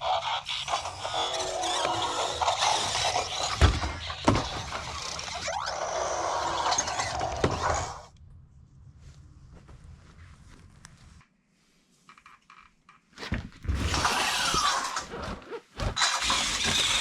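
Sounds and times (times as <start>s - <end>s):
robot toy servos whirring: 0.0s - 8.1s, 13.8s - 17.0s
toy transforming sound effect: 0.0s - 8.1s, 13.8s - 17.0s.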